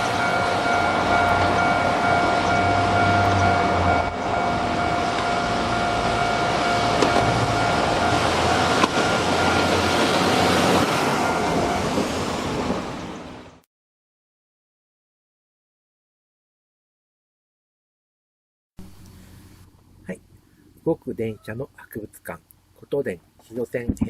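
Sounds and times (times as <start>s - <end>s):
electric train running: 0.0s - 13.6s.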